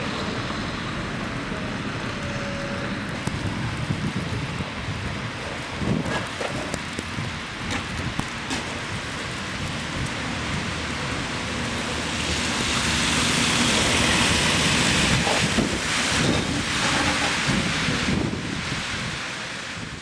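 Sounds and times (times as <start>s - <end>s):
tyres hissing through slush: 8.4s - 19.8s.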